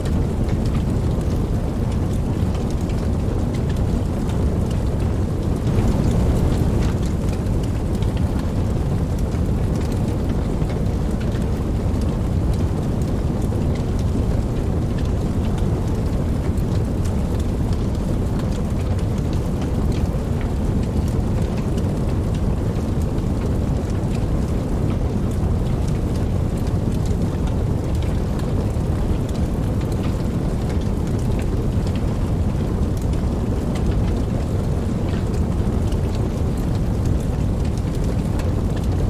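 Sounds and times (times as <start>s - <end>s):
steady rain: 0.0s - 39.0s
distant thunder rumble: 5.6s - 9.0s.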